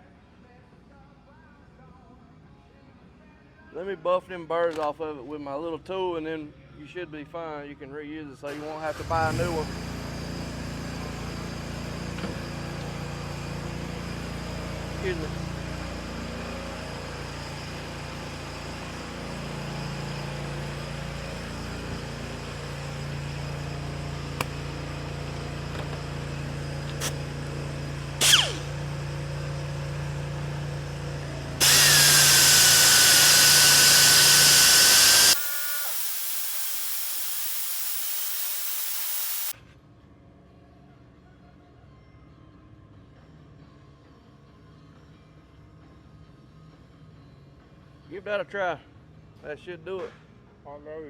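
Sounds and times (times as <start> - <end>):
grinding with high whine: 9.4 - 39.5
power tool humming: 26.8 - 29.6, 31.3 - 39.5.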